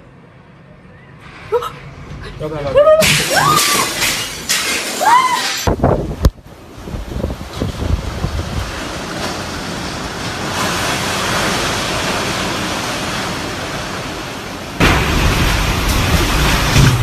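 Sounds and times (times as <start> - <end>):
strong wind rushing: 5.6 - 17.0
wind buffeting microphone: 5.7 - 13.9.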